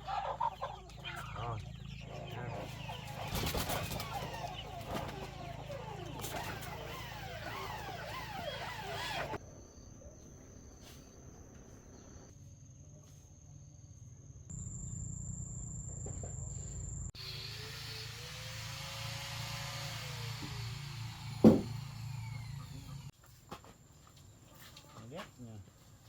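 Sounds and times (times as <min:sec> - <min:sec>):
many overlapping chirping calls: 0:00.0 - 0:12.3
insects trilling: 0:02.4 - 0:17.1.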